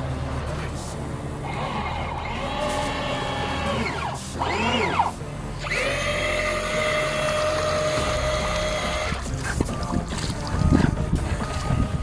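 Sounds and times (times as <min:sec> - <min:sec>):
small electric motors whining: 0:01.4 - 0:09.4.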